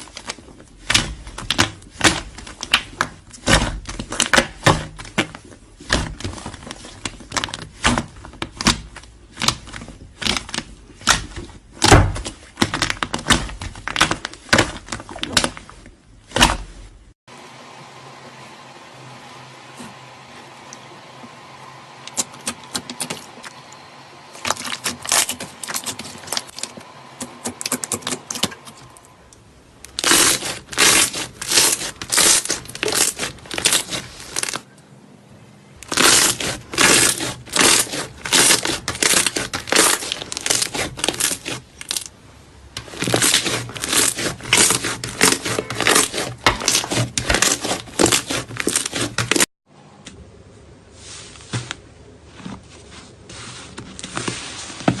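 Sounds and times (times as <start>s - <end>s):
slime crackling and popping: 24.4s - 28.8s, 29.9s - 34.6s, 35.8s - 42.1s, 42.8s - 49.4s.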